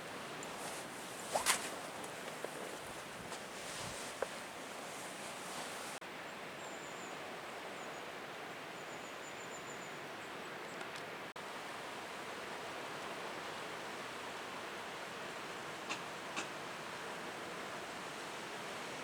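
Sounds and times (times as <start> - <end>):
calm sea waves on shore: 0.0 - 6.0, 11.4 - 19.0.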